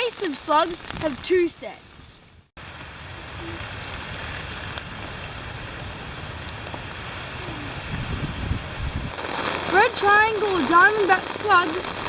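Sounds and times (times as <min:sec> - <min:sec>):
rushing water: 0:02.6 - 0:12.0.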